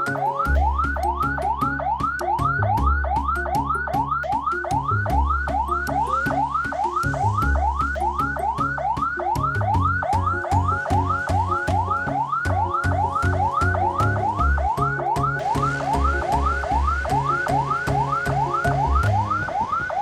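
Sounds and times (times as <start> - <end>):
low repeating tones: 0.0 - 20.0
siren in fast yelp: 5.3 - 20.0.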